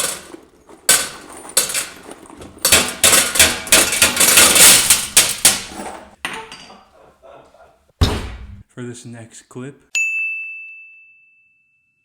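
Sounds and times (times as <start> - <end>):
nails clattering into bucket: 0.0 - 6.8.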